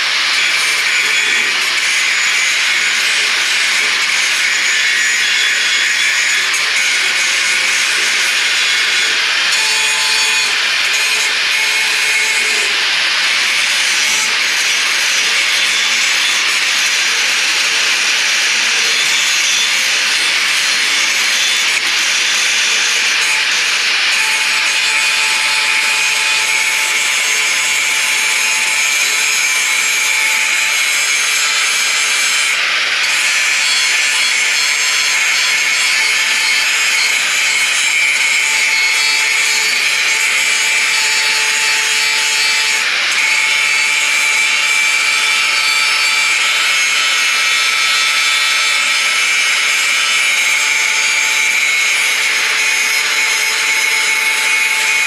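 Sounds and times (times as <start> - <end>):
power tool cutting sheet steel: 0.0 - 55.0.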